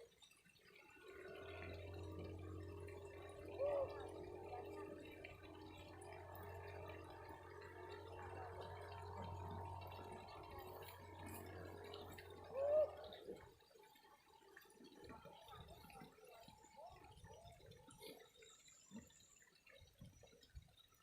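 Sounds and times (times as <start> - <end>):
water gurgling and trickling: 0.0 - 21.0
low hum: 0.7 - 14.0.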